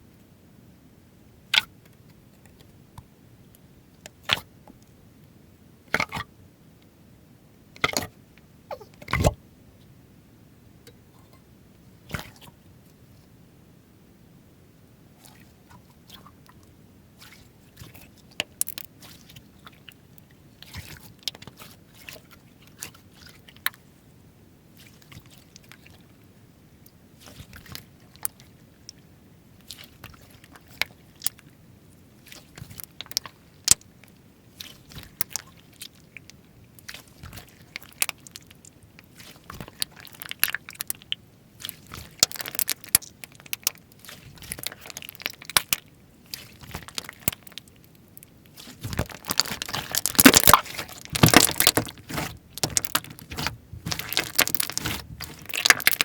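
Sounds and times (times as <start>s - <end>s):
slime squeezed by hand crackling: 39.1s - 47.8s, 48.5s - 56.0s.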